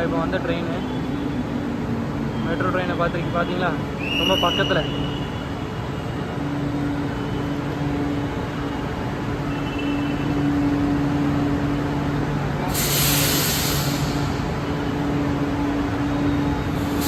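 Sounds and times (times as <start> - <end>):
air release hiss: 12.7 - 14.5, 16.8 - 17.0.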